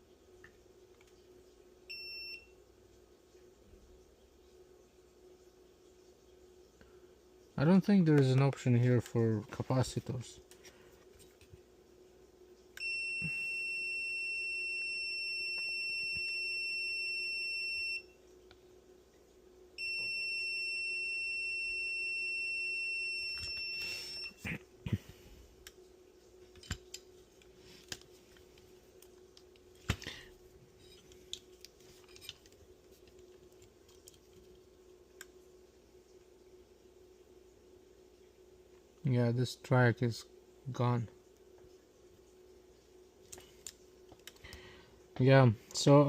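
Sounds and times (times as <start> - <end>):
multimeter continuity beep: 1.9 - 2.6, 12.8 - 18.2, 19.8 - 24.4, 30.8 - 31.1.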